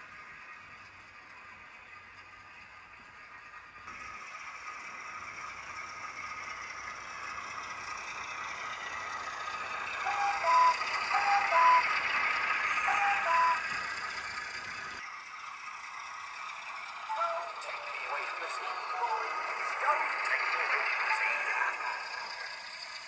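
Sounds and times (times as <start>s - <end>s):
diesel engine sound from small speaker: 0.0s - 23.0s
locomotive horn toots: 10.0s - 14.0s.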